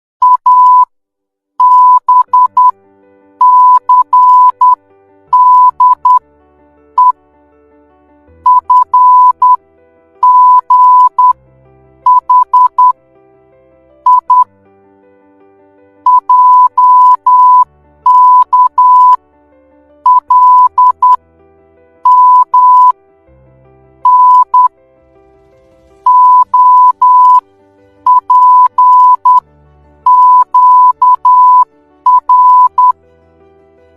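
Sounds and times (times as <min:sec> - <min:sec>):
morse code tone: 0:00.2 - 0:00.9, 0:01.6 - 0:02.7, 0:03.4 - 0:06.2, 0:08.5 - 0:09.6, 0:10.2 - 0:11.4, 0:12.1 - 0:13.0, 0:14.0 - 0:14.5, 0:16.1 - 0:19.2, 0:20.0 - 0:21.2, 0:22.0 - 0:22.9, 0:24.0 - 0:24.7, 0:26.0 - 0:27.4, 0:28.0 - 0:29.4, 0:30.1 - 0:33.0.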